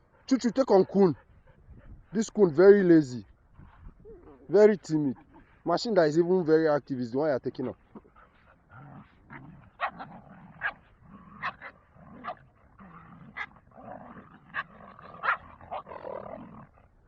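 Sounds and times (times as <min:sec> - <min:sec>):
dogs growling: 0:03.5 - 0:06.4, 0:07.6 - 0:17.0.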